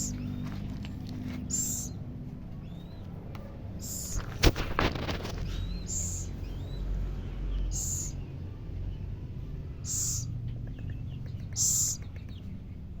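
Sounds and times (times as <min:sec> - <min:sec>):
owlet hissing rasps: 0:01.5 - 0:01.9, 0:09.9 - 0:10.3.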